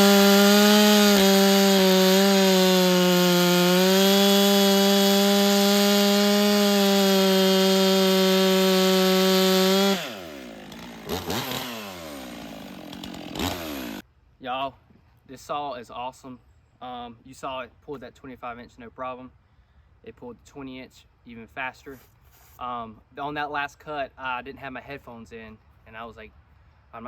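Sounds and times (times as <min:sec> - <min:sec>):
chainsaw cutting log: 0:00.0 - 0:14.0.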